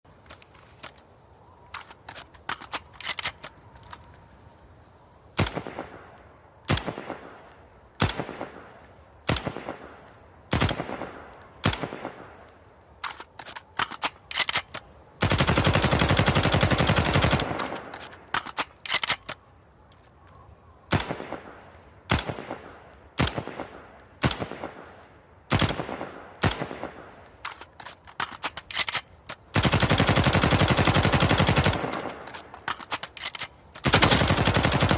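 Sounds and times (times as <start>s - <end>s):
assault rifle firing: 29.5s - 34.9s.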